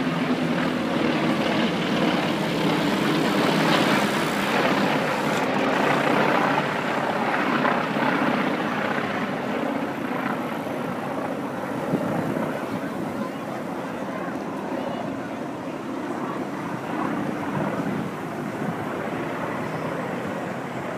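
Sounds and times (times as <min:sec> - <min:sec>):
aircraft engine drone: 0:00.0 - 0:15.8.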